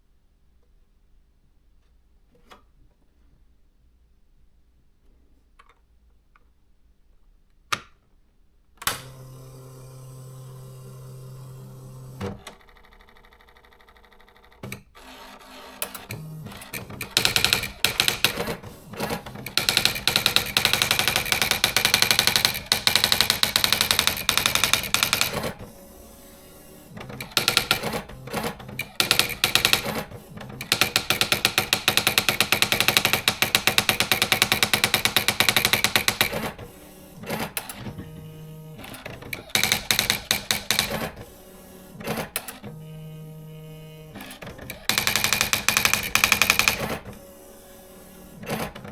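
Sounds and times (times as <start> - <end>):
typewriter humming and whirring: 14.6 - 48.9
typewriter click: 15.8 - 25.6, 27.0 - 36.6, 38.9 - 41.2, 44.2 - 47.1
typewriter key strikes: 16.8 - 25.5, 27.2 - 28.0, 28.8 - 30.0, 30.6 - 36.6, 39.4 - 41.0, 44.8 - 46.9.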